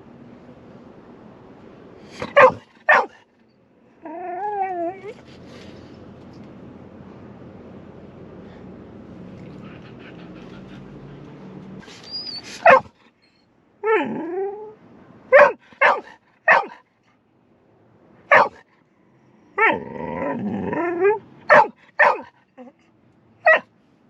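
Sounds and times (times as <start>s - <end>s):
dog barking: 2.2s - 3.2s, 12.6s - 13.0s, 15.3s - 16.8s, 18.3s - 18.6s, 21.5s - 22.7s, 23.4s - 23.7s
dog whining: 4.0s - 5.4s, 11.8s - 14.8s, 19.6s - 22.7s.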